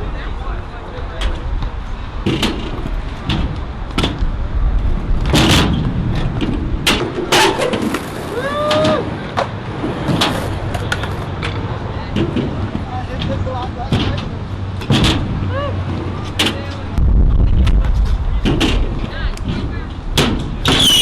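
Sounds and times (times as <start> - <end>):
skateboard wheels rolling on concrete: 0.0 - 21.0
skateboards clacking on ground: 5.1 - 17.0, 17.8 - 21.0.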